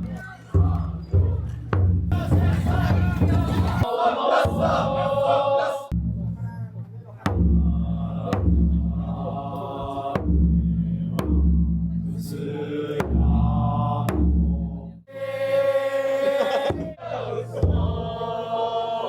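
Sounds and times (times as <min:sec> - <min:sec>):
group chanting: 0:00.0 - 0:01.5, 0:02.1 - 0:06.0, 0:07.3 - 0:10.4, 0:12.2 - 0:19.0
large drum booming: 0:00.6 - 0:03.9.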